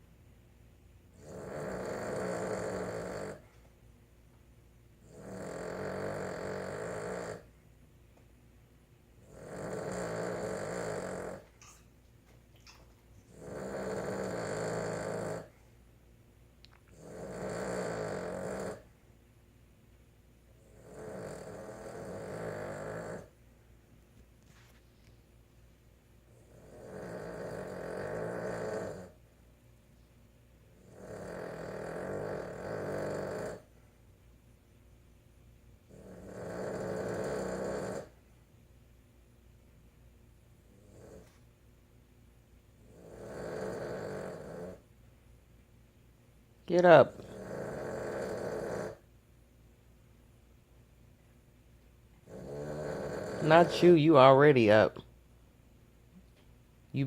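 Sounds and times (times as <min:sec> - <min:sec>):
dog snoring: 0:01.1 - 0:03.6, 0:05.0 - 0:07.6, 0:09.2 - 0:11.8, 0:13.2 - 0:15.7, 0:16.9 - 0:18.9, 0:20.5 - 0:23.4, 0:26.3 - 0:29.2, 0:30.7 - 0:33.8, 0:35.8 - 0:38.2, 0:40.6 - 0:41.5, 0:42.8 - 0:44.9, 0:46.7 - 0:49.1, 0:52.2 - 0:55.0.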